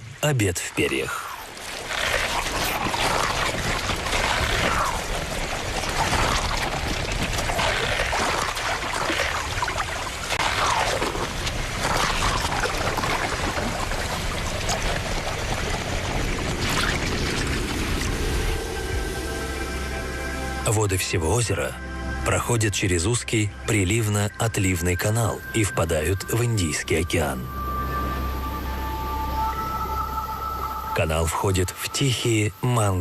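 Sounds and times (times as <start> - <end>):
water pouring and splashing: 0.0 - 20.2.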